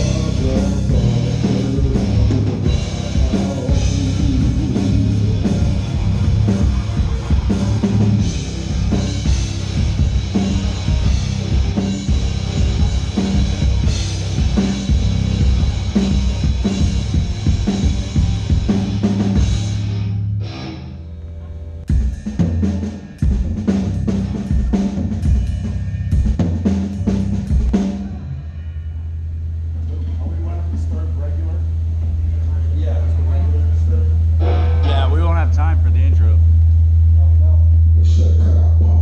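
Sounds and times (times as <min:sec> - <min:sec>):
rock band playing: 0:00.0 - 0:28.6, 0:34.4 - 0:36.4
low held bass tone: 0:00.0 - 0:39.0.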